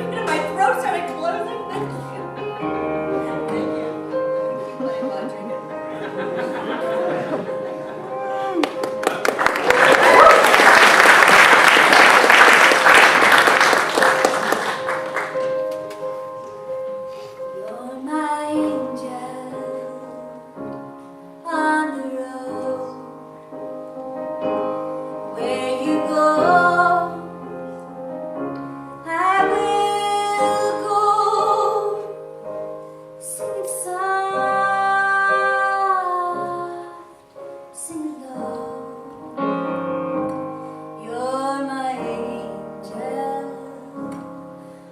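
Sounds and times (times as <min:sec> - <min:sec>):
piano: 0:00.0 - 0:44.9
audience applause: 0:06.9 - 0:15.9
woman singing slow melody: 0:17.6 - 0:20.5, 0:21.4 - 0:23.2, 0:25.3 - 0:27.3, 0:29.0 - 0:32.3, 0:33.2 - 0:37.2, 0:37.8 - 0:39.2, 0:41.0 - 0:44.4.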